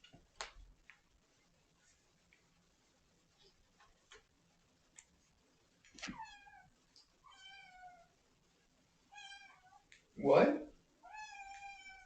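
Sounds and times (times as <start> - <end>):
kitten meowing: 11.0 - 12.0.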